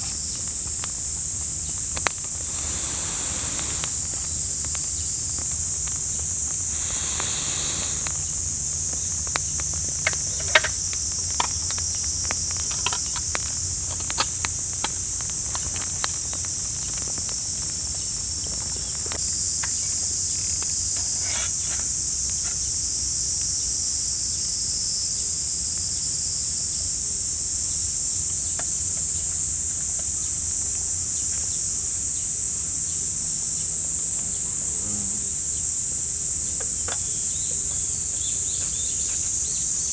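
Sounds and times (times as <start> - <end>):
small clicks and taps: 0.0 - 2.8, 3.5 - 20.0
insects shrilling: 0.0 - 39.9.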